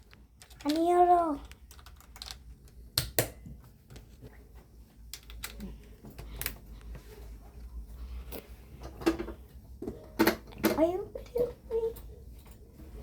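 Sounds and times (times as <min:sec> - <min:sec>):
plastic parts clicking: 0:00.0 - 0:03.3, 0:05.1 - 0:06.6.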